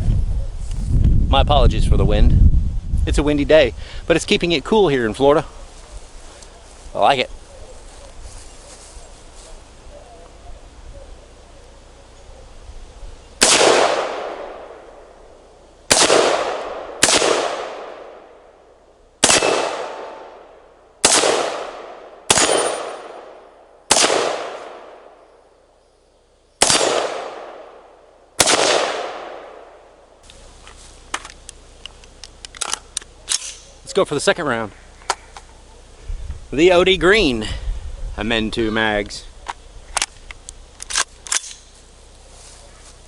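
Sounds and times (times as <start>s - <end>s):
rifle shots echoing: 13.4s - 15.1s, 15.9s - 18.6s, 19.2s - 25.2s, 26.6s - 30.0s.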